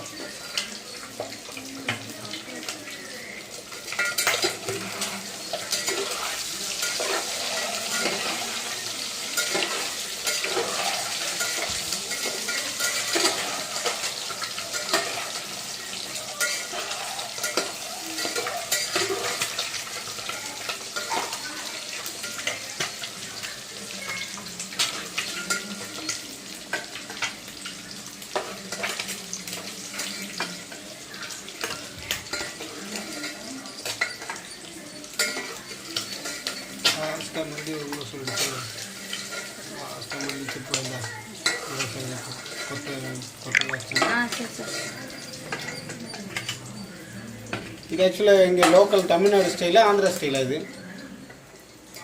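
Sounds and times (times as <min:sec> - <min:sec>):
eggs sizzling in hot oil: 0:00.0 - 0:52.0
metal spatula scraping pan: 0:03.9 - 0:20.1.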